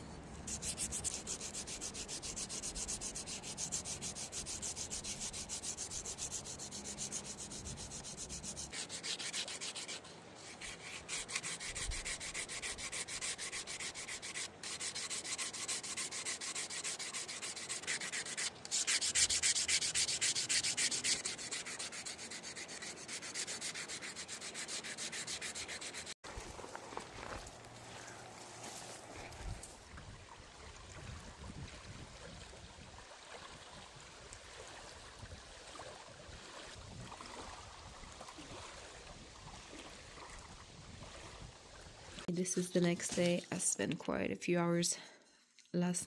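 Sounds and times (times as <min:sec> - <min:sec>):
sandpaper rubbing wood: 0:00.5 - 0:26.2.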